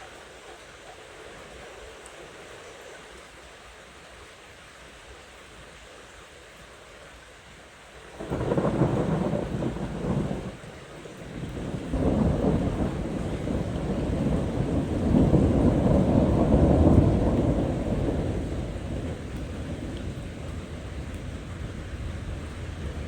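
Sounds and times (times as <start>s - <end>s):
rain hissing: 7.6s - 23.0s
rolling thunder rumble: 8.2s - 23.0s.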